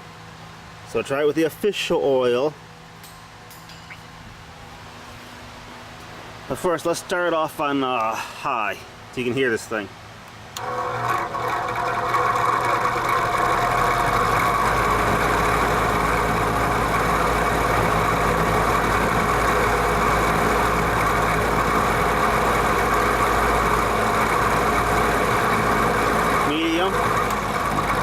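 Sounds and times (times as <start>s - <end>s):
box fan motor humming and rattling: 8.9s - 28.0s.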